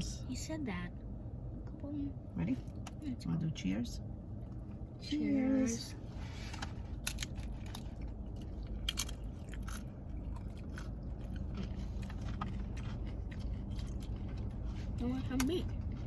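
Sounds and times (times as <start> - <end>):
steady low hum: 0.0 - 16.0
chips crunching and chewing: 7.0 - 16.0.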